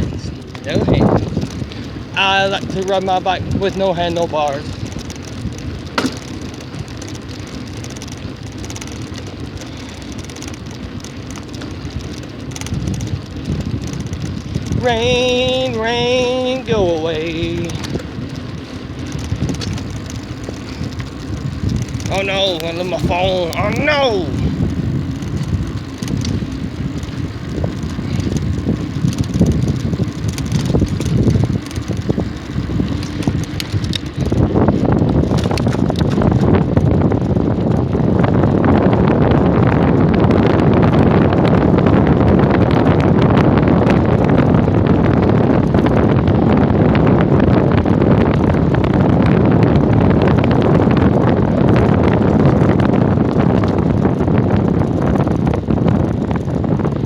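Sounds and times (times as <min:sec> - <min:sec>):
road noise: 0:00.0 - 0:57.0
wind rushing over microphone: 0:00.0 - 0:57.0
clicks and rattles: 0:17.4 - 0:36.6.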